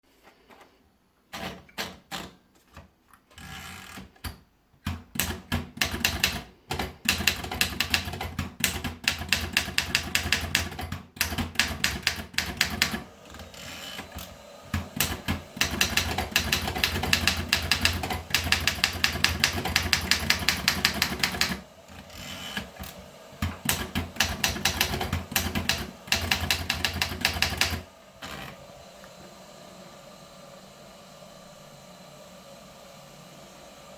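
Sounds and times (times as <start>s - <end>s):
typewriter keys clacking: 3.3s - 13.0s, 14.9s - 21.6s, 22.8s - 27.8s.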